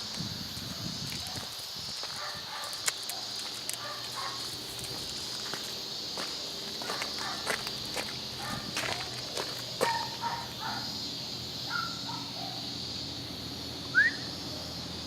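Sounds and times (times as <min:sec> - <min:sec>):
footsteps: 0:00.0 - 0:10.4
high-pitched outdoor hiss: 0:00.0 - 0:15.0.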